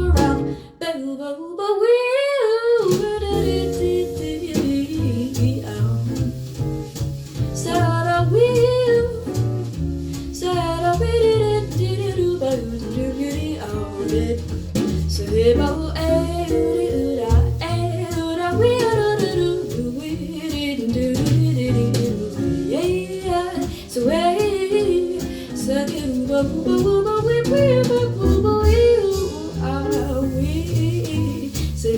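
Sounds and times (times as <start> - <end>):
song with bass guitar and voice: 0.0 - 0.7, 27.4 - 31.9.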